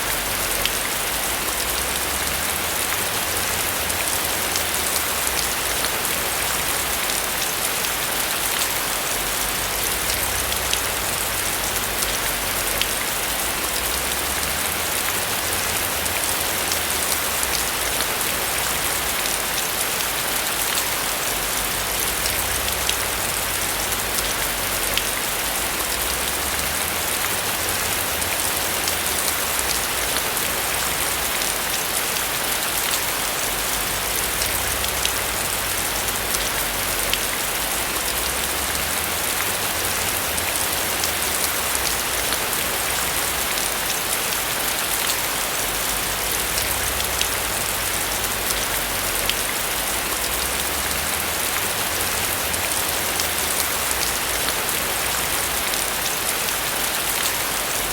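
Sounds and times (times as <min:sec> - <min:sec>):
rain falling on a roof: 0:00.0 - 0:57.9.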